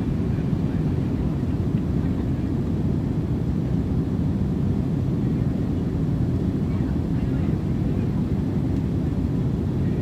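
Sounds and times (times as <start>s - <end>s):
airplane engine and airflow rumble: 0.0s - 10.0s.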